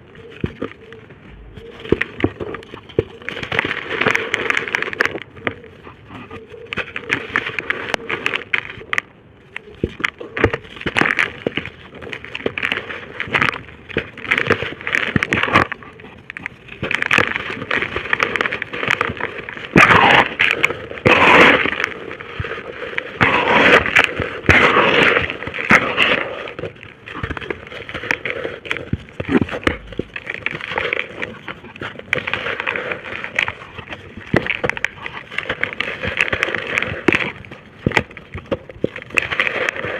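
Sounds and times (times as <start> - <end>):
brick dust crunching: 0.0 - 39.9.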